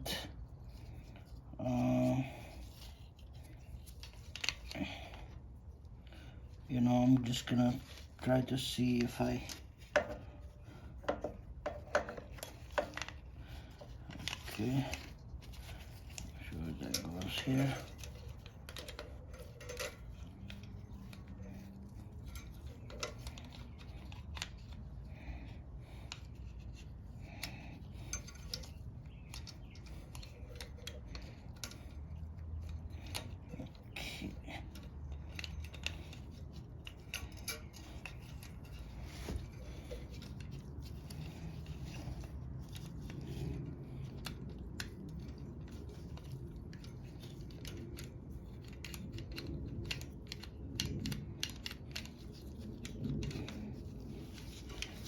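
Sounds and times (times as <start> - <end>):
metallic clicks and clinks of tools: 7.1 - 25.1, 26.0 - 55.0.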